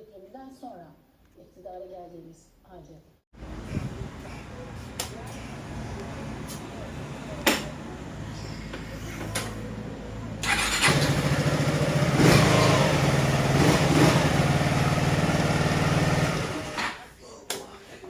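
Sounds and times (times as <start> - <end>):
scooter engine running: 9.7 - 16.8.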